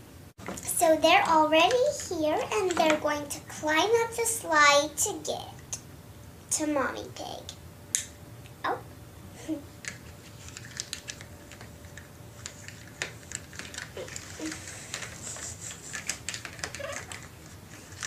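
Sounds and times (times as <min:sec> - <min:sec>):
plastic toys clicking: 0:09.8 - 0:15.2.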